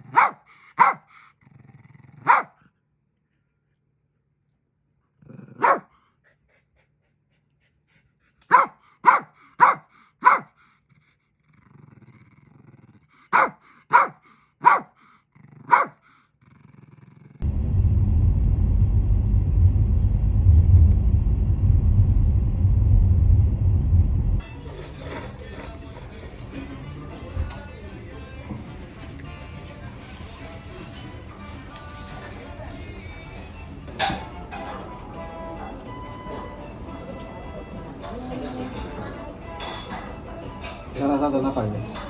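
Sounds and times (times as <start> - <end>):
small dog yapping: 0.0 - 1.0, 2.2 - 2.6, 5.6 - 5.9, 8.5 - 10.5, 13.4 - 14.9, 15.7 - 16.0
loud low rumbling: 17.4 - 24.4.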